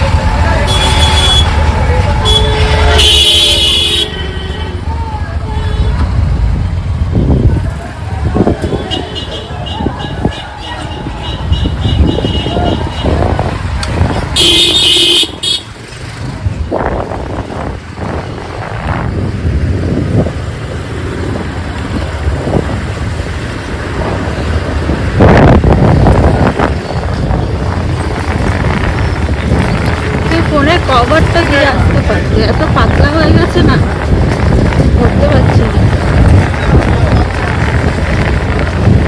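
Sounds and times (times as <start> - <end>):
traffic rumble and road noise: 0.0 - 39.0
vehicle horn: 0.6 - 6.3, 8.6 - 13.6, 14.3 - 15.8.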